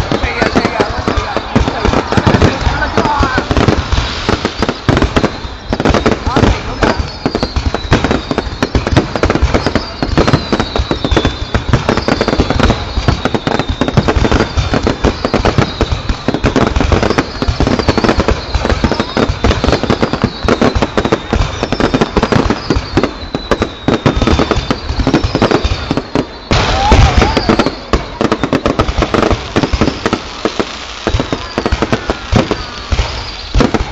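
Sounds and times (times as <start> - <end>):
fireworks bangs and crackles: 0.0 - 33.9
high falling whistle: 9.5 - 28.8, 31.2 - 33.9.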